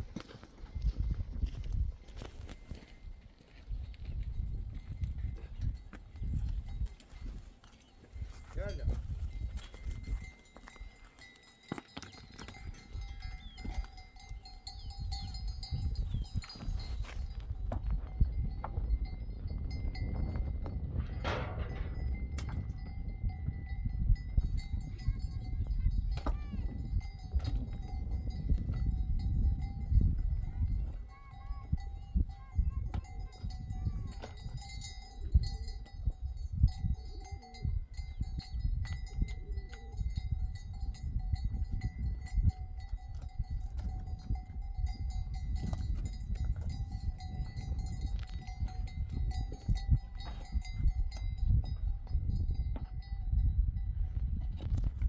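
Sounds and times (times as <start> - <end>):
animal bells ringing: 0.3 - 55.0
rumble: 17.6 - 25.3.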